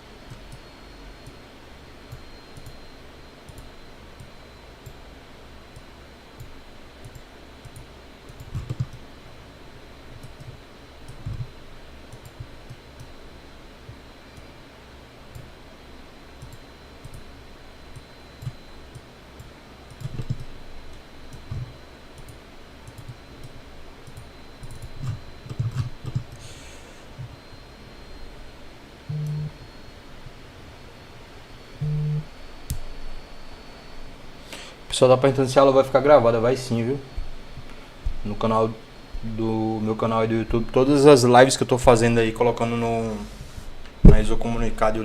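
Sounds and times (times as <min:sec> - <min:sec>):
faint high-pitched whine: 0:00.0 - 0:45.0
keyboard and mouse clicks: 0:06.4 - 0:09.0, 0:10.2 - 0:11.5, 0:19.9 - 0:20.5, 0:21.3 - 0:26.4.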